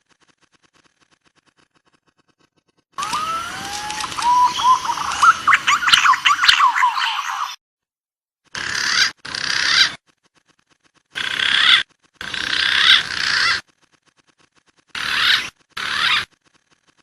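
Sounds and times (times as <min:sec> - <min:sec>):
pigeon whistled calls: 0:03.0 - 0:07.6.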